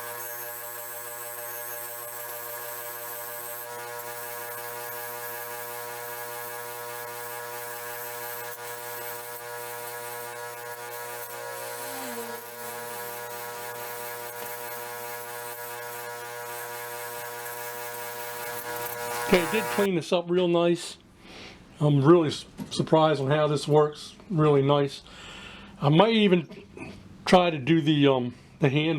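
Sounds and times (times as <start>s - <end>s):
electrical hum: 0.0s - 19.9s.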